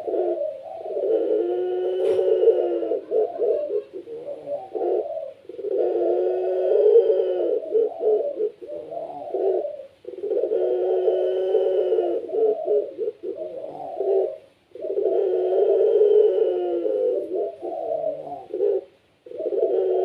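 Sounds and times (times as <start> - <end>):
dove cooing: 0.0 - 20.0.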